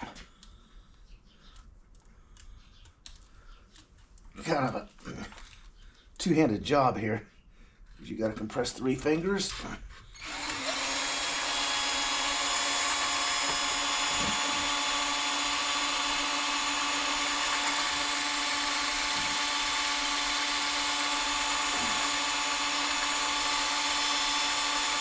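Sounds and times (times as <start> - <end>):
drill humming: 10.1 - 25.0.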